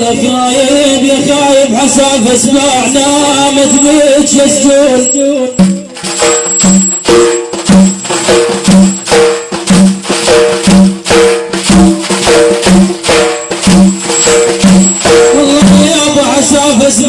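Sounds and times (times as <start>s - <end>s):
repeating melodic figure: 2.4s - 17.0s
frame drum strikes: 5.5s - 16.6s.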